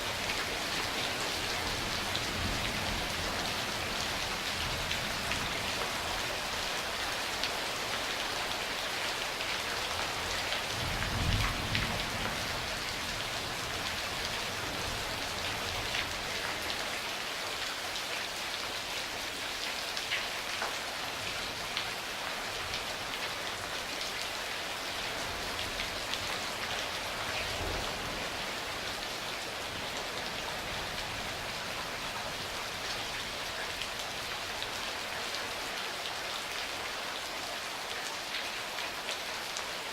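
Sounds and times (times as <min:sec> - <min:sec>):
steady rain: 0:00.0 - 0:39.9
low rumble of thunder: 0:10.7 - 0:15.2.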